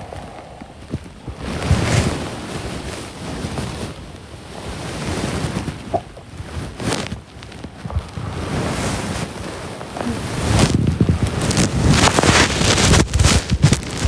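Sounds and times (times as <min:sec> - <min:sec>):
woman snoring: 0:09.8 - 0:11.7.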